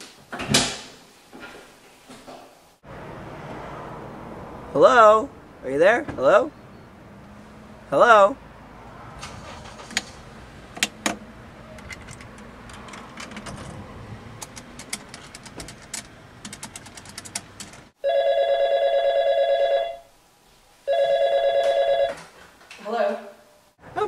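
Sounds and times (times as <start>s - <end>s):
telephone ringing: 18.0s - 20.0s, 20.9s - 22.2s.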